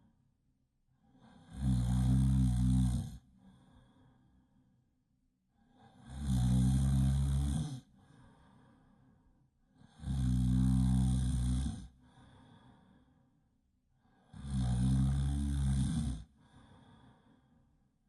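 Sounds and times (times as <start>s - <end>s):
quiet breath: 0.0s - 18.0s
loud snoring: 1.2s - 3.3s, 5.8s - 8.0s, 9.8s - 12.0s, 14.3s - 16.7s.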